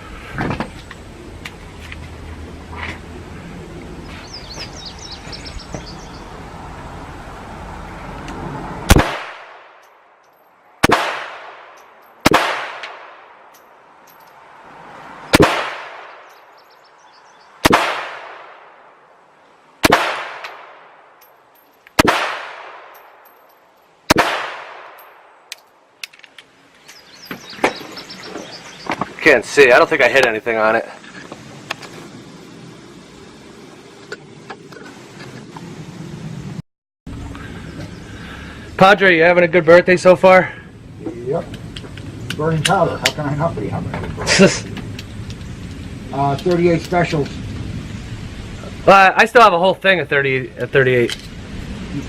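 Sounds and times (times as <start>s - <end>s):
steady background noise: 0.0s - 52.0s
pistol shots echoing: 8.9s - 9.8s, 10.8s - 13.4s, 15.3s - 16.3s, 17.6s - 18.8s, 19.8s - 21.0s, 22.0s - 23.0s, 24.1s - 25.3s.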